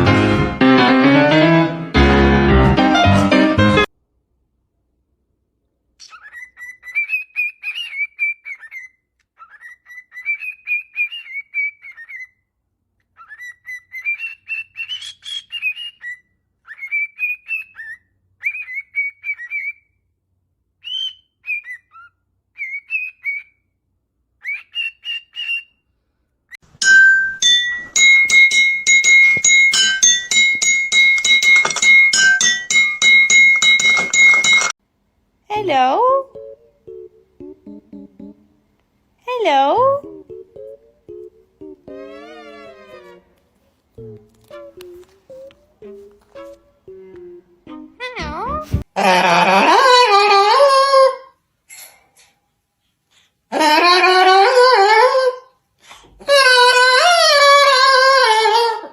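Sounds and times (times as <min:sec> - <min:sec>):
music with high notes: 0:00.0 - 0:03.9, 0:26.8 - 0:34.7, 0:40.0 - 0:43.4, 0:44.0 - 0:48.8.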